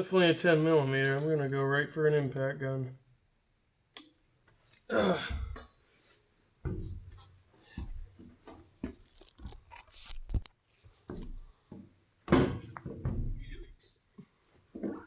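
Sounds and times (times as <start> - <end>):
man grunting: 4.9 - 5.6
knocks and scrapes of tools: 6.7 - 10.4.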